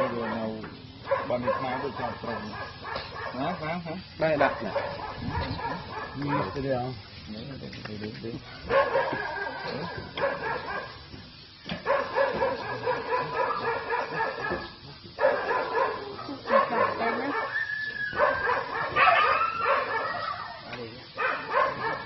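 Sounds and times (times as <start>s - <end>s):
dog whining and crying: 17.1s - 20.7s.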